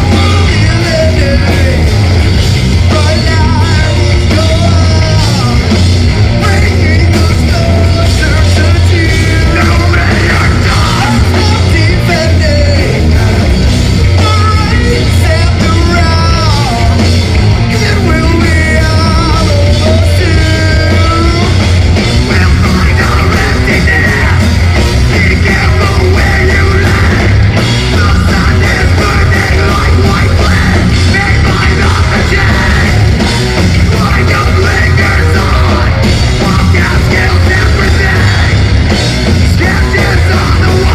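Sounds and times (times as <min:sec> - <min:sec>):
heavy metal band playing: 0:00.0 - 0:40.9.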